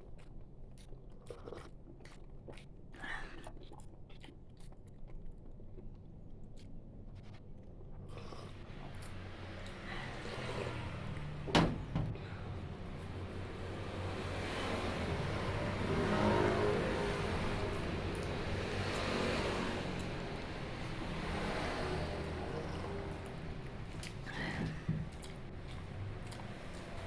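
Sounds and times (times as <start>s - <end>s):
chewing and mouth clicks: 0.0s - 11.5s, 17.4s - 27.0s.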